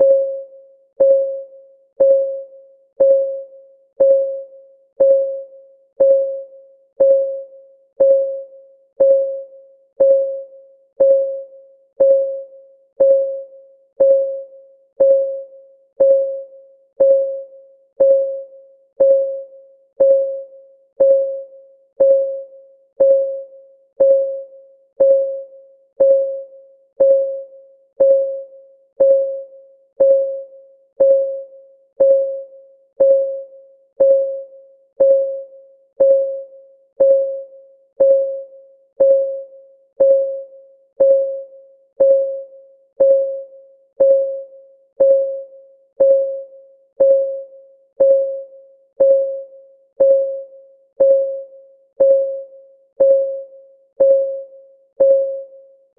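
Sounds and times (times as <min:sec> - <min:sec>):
synthetic clock ticks: 0:20.0 - 0:20.4, 0:22.0 - 0:22.4, 0:24.0 - 0:24.4, 0:26.0 - 0:26.4, 0:28.0 - 0:28.4, 0:29.0 - 0:29.4, 0:30.0 - 0:30.4, 0:31.0 - 0:31.4, 0:32.0 - 0:32.4, 0:33.0 - 0:33.4, 0:34.0 - 0:34.4, 0:35.0 - 0:35.4, 0:36.0 - 0:36.4, 0:37.0 - 0:37.4, 0:38.0 - 0:38.4, 0:39.0 - 0:39.4, 0:40.0 - 0:40.4, 0:41.0 - 0:41.4, 0:42.0 - 0:42.4, 0:43.0 - 0:43.4, 0:44.0 - 0:44.4, 0:45.0 - 0:45.4, 0:46.0 - 0:46.4, 0:47.0 - 0:48.4, 0:49.0 - 0:49.4, 0:50.0 - 0:50.4, 0:51.0 - 0:51.4, 0:52.0 - 0:52.4, 0:53.0 - 0:53.4, 0:54.0 - 0:54.4, 0:55.0 - 0:55.5.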